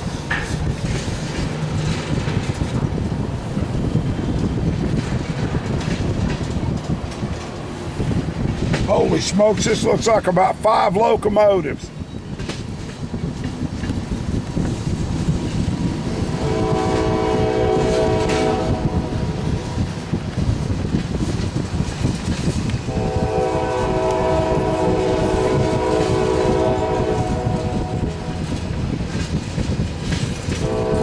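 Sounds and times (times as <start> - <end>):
diesel locomotives rumbling: 0.0 - 31.0
locomotive air horn blasts: 16.0 - 19.5, 22.9 - 28.4, 30.6 - 31.0.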